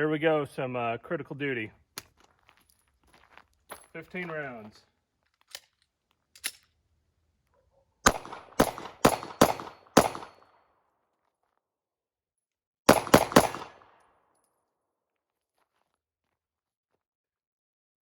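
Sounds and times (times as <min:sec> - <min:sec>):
pistol shots with echo: 0:08.0 - 0:10.6, 0:12.9 - 0:14.0.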